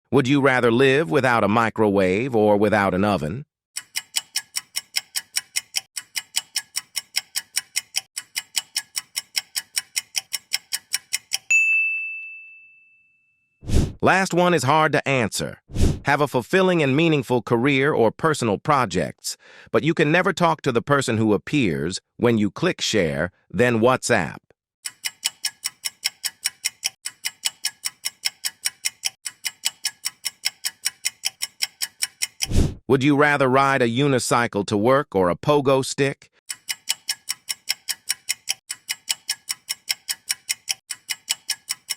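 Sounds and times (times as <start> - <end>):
clock ticking: 3.8 - 11.5, 24.8 - 32.6, 36.5 - 41.9
ringing ding: 11.5 - 13.6.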